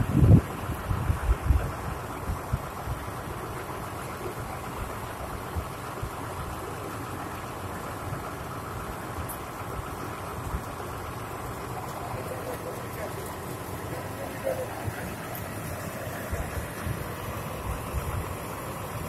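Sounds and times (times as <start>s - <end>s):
drill machine engine running: 7.6s - 19.0s.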